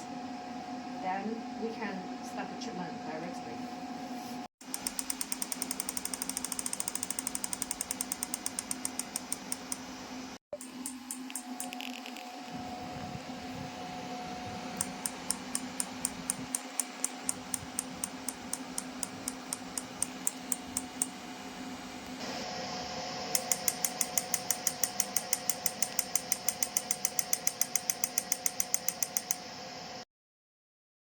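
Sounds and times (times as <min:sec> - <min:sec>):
magnetic therapy device clicking: 0:04.6 - 0:09.9, 0:10.6 - 0:12.2, 0:14.7 - 0:21.2, 0:23.3 - 0:29.4
steady machine hum: 0:04.6 - 0:30.0.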